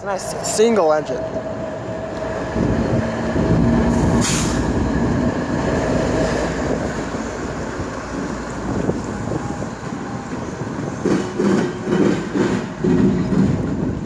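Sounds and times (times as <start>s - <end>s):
locomotive engine rumble: 0.0s - 14.0s
brief hiss: 4.1s - 4.7s.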